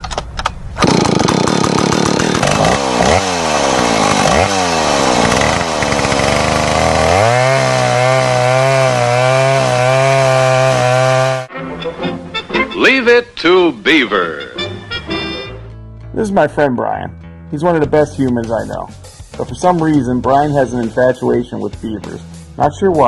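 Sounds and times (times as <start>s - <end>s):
chainsaw revving and cutting wood: 0.8s - 11.5s.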